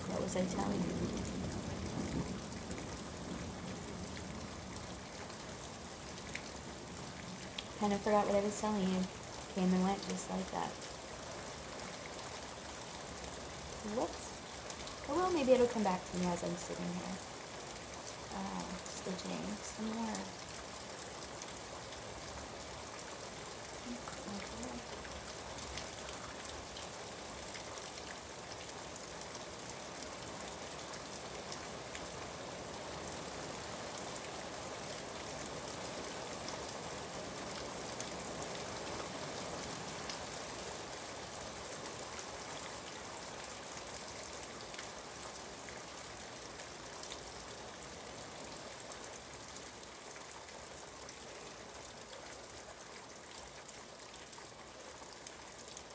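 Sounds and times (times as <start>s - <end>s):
raindrops ticking: 0.0s - 21.6s, 23.4s - 29.3s
steady rain hiss: 0.0s - 55.9s.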